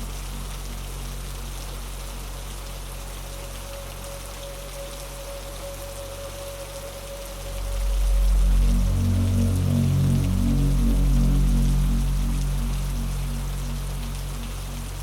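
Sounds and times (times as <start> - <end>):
rain hiss: 0.0 - 15.0
low synth bass drone: 5.9 - 15.0.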